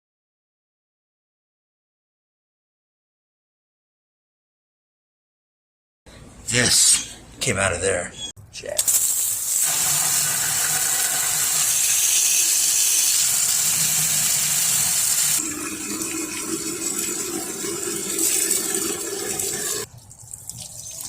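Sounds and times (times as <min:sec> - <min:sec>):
hose water spraying: 0:08.8 - 0:19.9.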